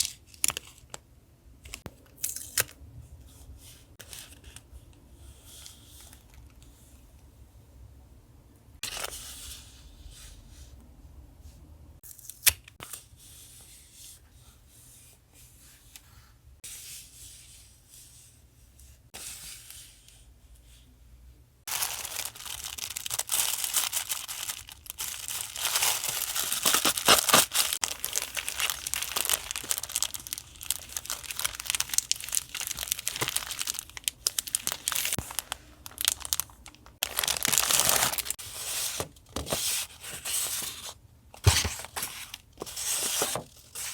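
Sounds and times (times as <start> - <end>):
paper crinkling and tearing: 21.7 - 39.5.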